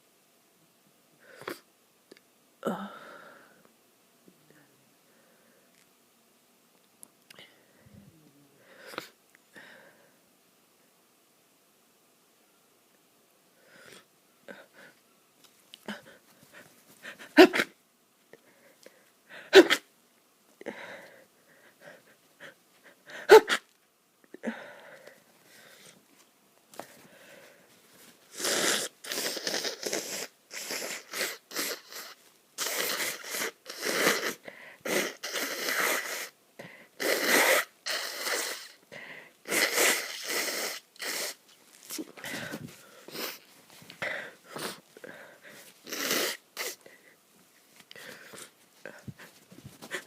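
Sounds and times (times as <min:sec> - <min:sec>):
person sneezing: 0:17.1 - 0:17.8, 0:19.4 - 0:19.9, 0:23.1 - 0:23.7, 0:28.3 - 0:36.4, 0:37.0 - 0:38.8
forceful bursts of air through nose: 0:28.2 - 0:38.8, 0:39.4 - 0:44.8, 0:45.4 - 0:46.9.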